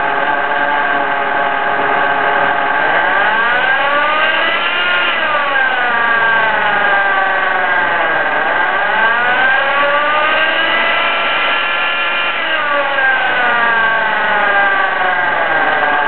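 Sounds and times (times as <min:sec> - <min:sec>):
vehicle whirring whine: 0:00.0 - 0:16.0.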